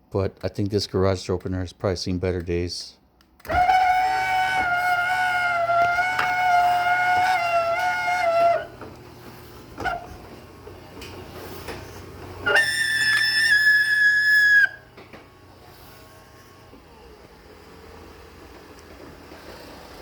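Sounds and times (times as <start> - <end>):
garage door opener running: 3.4 - 20.0
whistle-like squeal: 3.5 - 8.7, 12.4 - 14.9.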